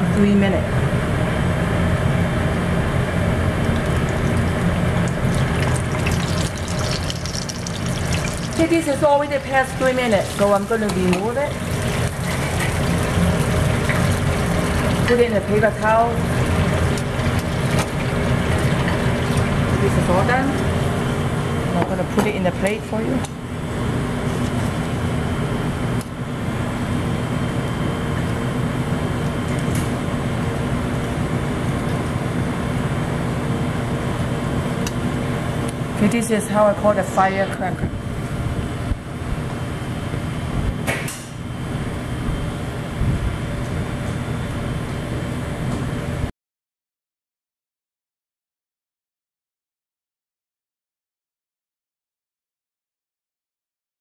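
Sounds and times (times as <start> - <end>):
low even hum: 0.0 - 46.3
shrimp sizzling in hot oil: 5.2 - 8.8.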